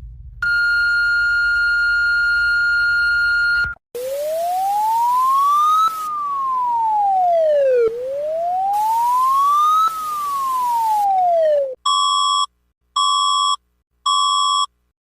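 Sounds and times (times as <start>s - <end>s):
siren wailing: 4.0s - 11.8s
short electronic beep: 11.9s - 14.7s.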